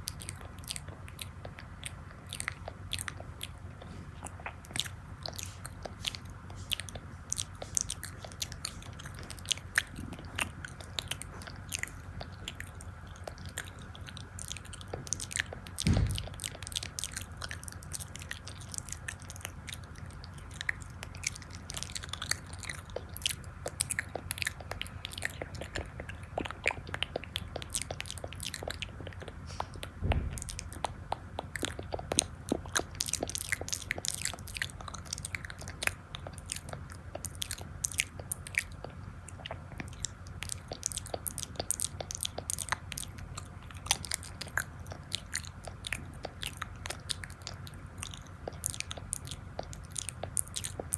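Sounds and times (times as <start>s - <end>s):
food being chewed with crisp crunches: 0.0s - 50.9s
dull low thump: 15.8s - 16.6s, 29.8s - 30.9s.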